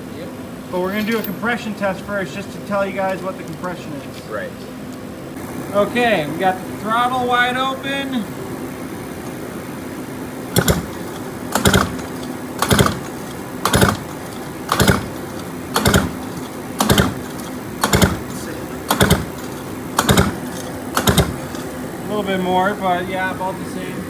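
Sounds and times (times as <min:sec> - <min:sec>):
recoil pull starter rasping: 0:04.9 - 0:24.0
two-stroke engine cranking: 0:05.4 - 0:23.1.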